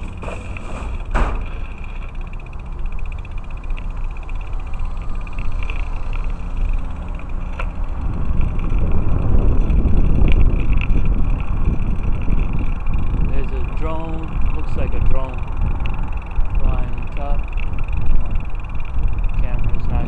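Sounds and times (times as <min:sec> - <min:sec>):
bicycle road rumble: 0:00.0 - 0:20.0
wind buffeting microphone: 0:00.0 - 0:20.0
faint clicks: 0:00.1 - 0:09.0.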